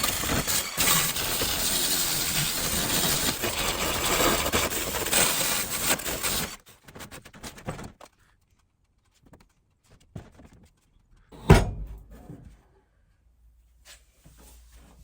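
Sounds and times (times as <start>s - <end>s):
heavy thunk: 11.4s - 12.4s.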